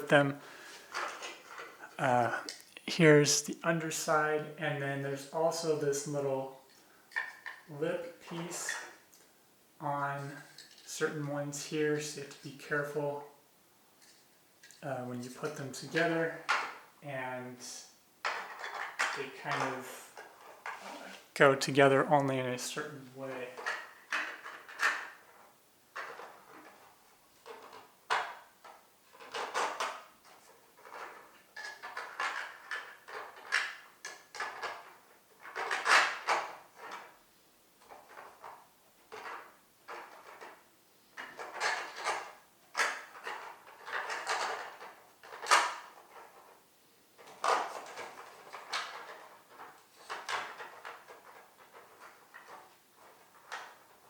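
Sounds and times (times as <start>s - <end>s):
plastic tiles clacking and scraping: 0.7s - 1.8s, 7.1s - 7.7s, 18.2s - 20.8s, 23.3s - 25.4s, 26.0s - 28.4s, 29.1s - 37.1s, 37.8s - 40.6s, 41.2s - 46.6s, 47.2s - 54.0s.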